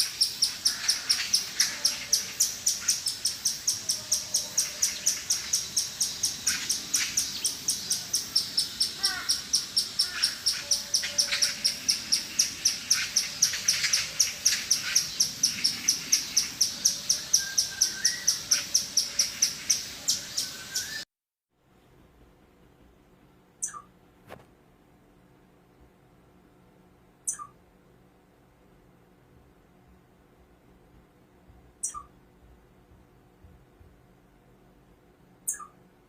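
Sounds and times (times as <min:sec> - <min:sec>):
squirrel chirping: 0:00.0 - 0:21.0, 0:23.6 - 0:23.9, 0:27.2 - 0:27.6, 0:31.8 - 0:32.2, 0:35.4 - 0:35.8.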